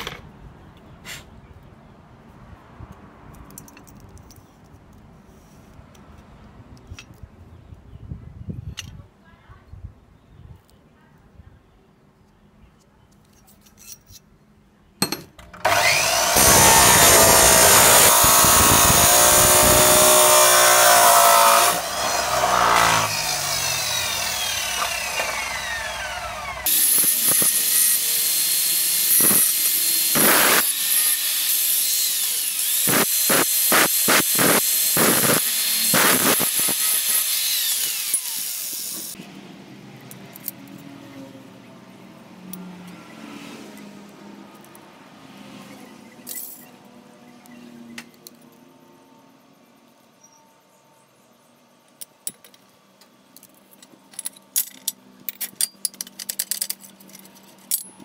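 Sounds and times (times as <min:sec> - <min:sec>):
power tool whine: 0:15.6 - 0:39.2
hissing cutting: 0:15.7 - 0:39.2.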